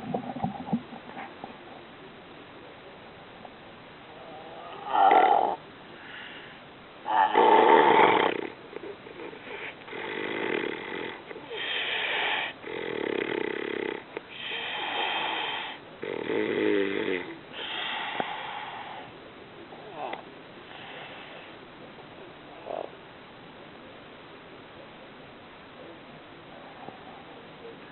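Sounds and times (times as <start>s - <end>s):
man snoring: 9.6s - 18.0s.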